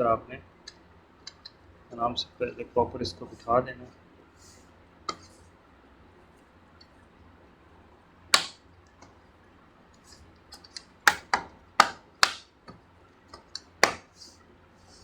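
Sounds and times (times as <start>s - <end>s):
plastic clips snapping into place: 10.6s - 12.5s.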